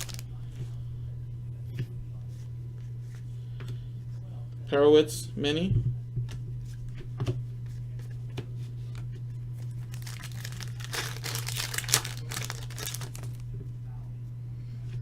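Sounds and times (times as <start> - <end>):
foil wrapper crinkling and tearing: 0.0 - 0.2, 9.6 - 13.4.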